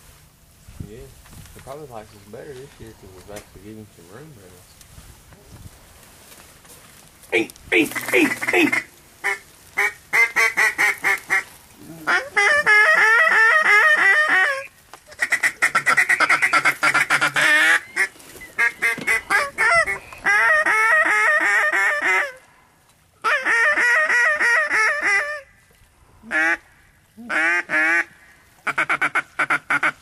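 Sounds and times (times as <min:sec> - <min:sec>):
waterfowl honking quacks: 0:07.3 - 0:22.5, 0:23.2 - 0:25.5, 0:26.3 - 0:30.0.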